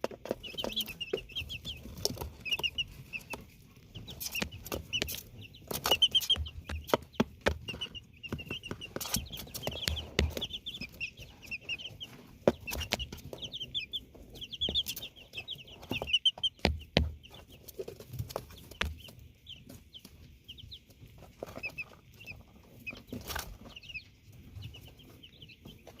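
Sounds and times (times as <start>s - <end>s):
sharp clicks and taps: 0.0s - 11.0s
chicks peeping: 0.0s - 26.0s.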